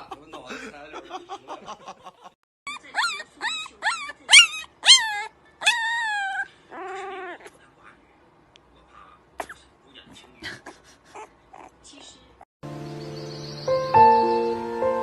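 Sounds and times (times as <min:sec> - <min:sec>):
small animal squealing: 0:02.7 - 0:07.6, 0:11.2 - 0:11.8.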